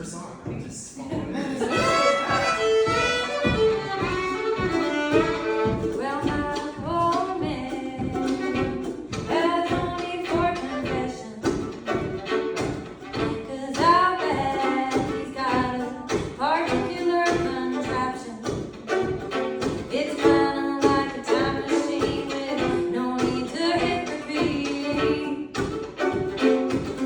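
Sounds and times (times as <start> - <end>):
string instrument accompaniment: 0.0 - 27.0
person singing: 13.2 - 25.6.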